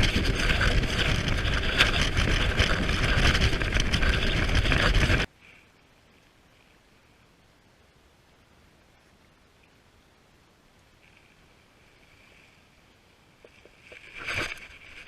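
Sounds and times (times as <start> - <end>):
boat engine: 0.0 - 5.3
wind noise on microphone: 0.0 - 5.3.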